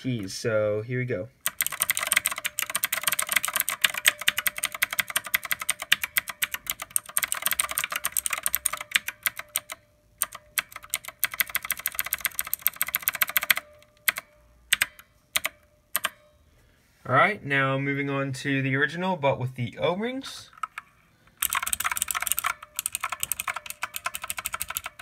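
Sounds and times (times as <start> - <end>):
mechanical keyboard typing: 1.4 - 16.2, 20.6 - 25.0.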